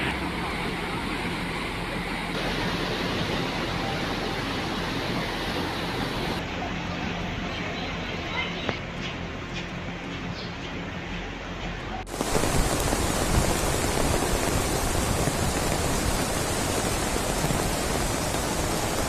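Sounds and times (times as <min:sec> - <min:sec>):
rushing water: 0:00.0 - 0:06.4, 0:12.1 - 0:19.0.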